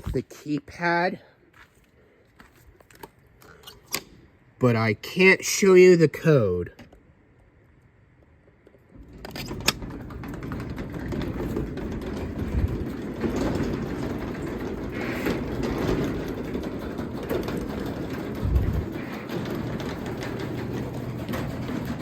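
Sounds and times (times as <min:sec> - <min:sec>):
garage door rumbling and rattling: 0:08.6 - 0:22.0
garage door opener click: 0:08.9 - 0:22.0.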